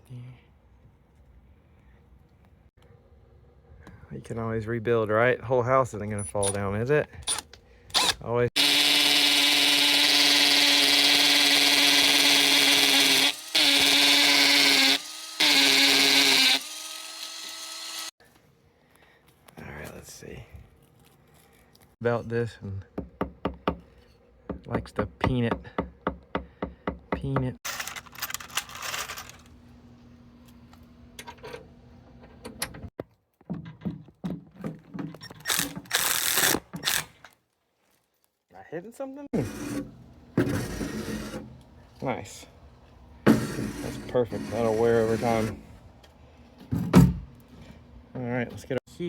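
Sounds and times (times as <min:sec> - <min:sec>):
power drill running: 0:07.3 - 0:18.2
light metallic clinks and rattles: 0:27.7 - 0:29.5.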